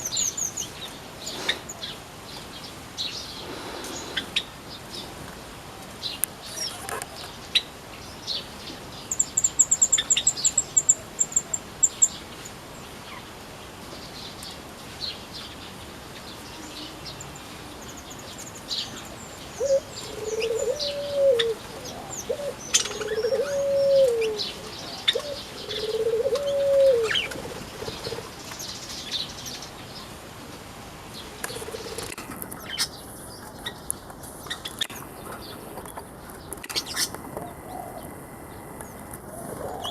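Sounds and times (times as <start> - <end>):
bird chirps: 16.6 - 29.7
low cooing call: 19.6 - 28.2, 37.2 - 39.9.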